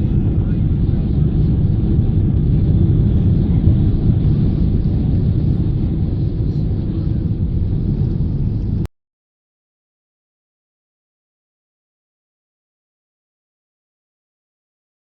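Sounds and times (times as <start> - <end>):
airplane cabin engine rumble: 0.0 - 8.9.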